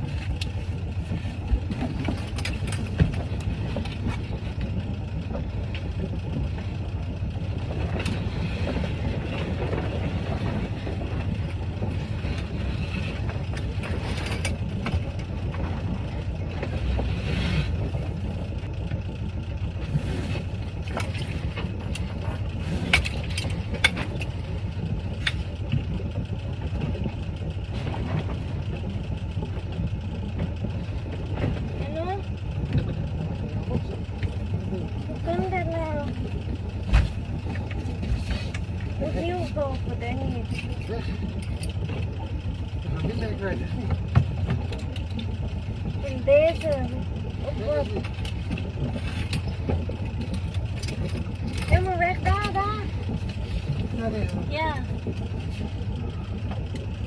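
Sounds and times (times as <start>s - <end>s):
boat engine running low: 0.0s - 57.0s.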